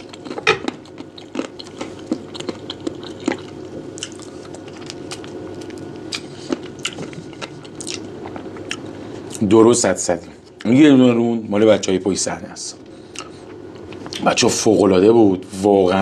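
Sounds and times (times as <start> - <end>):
wet chewing: 0.0 - 9.4.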